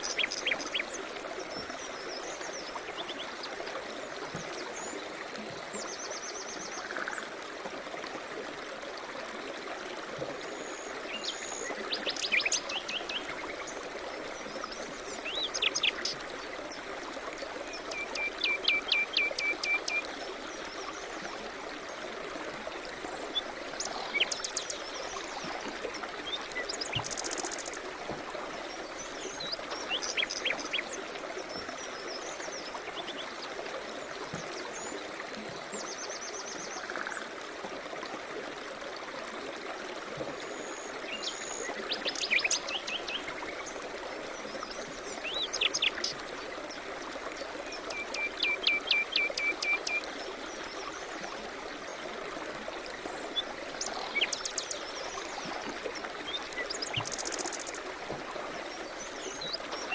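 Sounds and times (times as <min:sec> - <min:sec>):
flowing river water: 0:00.0 - 0:59.9.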